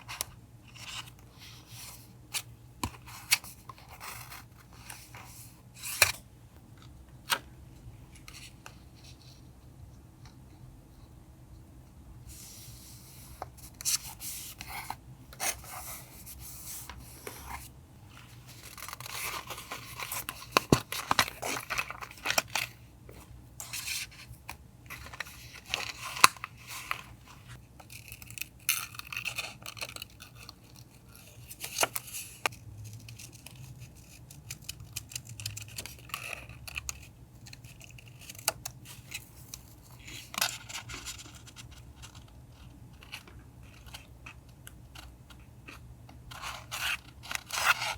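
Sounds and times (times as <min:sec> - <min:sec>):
paper crinkling and rustling: 0:13.4 - 0:47.9.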